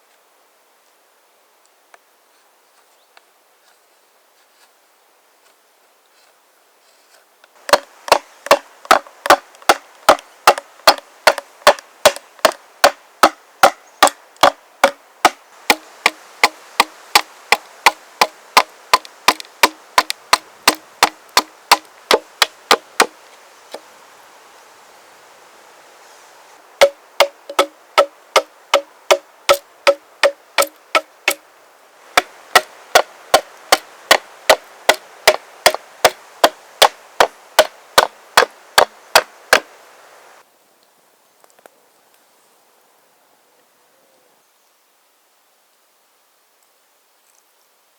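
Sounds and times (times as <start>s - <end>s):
axe striking wood: 7.7s - 23.2s, 26.8s - 31.4s, 32.2s - 39.7s.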